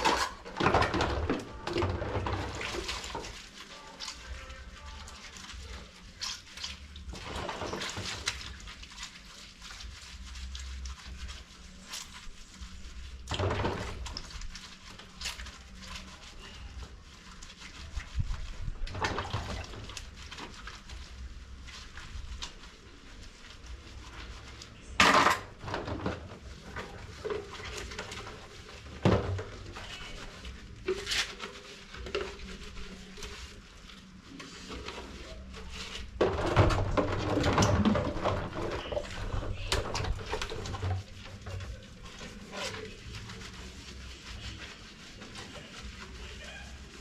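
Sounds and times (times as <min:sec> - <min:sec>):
scrubbing: 0:00.0 - 0:47.0.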